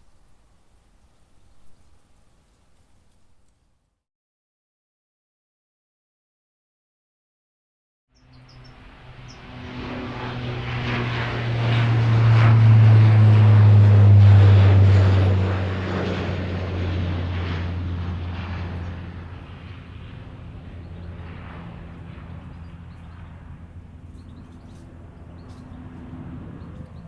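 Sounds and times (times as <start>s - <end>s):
turboprop plane passing: 8.2s - 27.0s.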